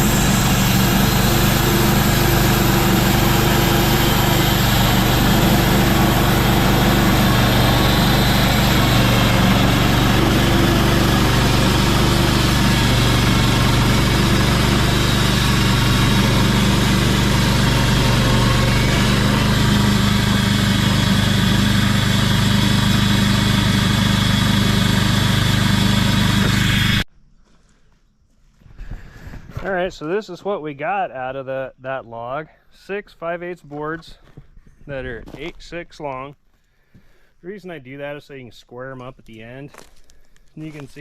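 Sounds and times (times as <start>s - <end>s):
sawmill engine sawing a log: 0.0s - 27.1s.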